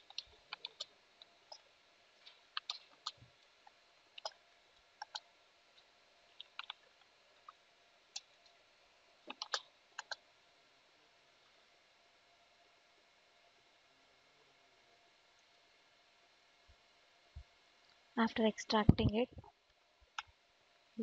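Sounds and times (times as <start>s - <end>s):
faint steady hiss: 0.0s - 21.0s
keyboard typing clicks: 9.3s - 10.2s.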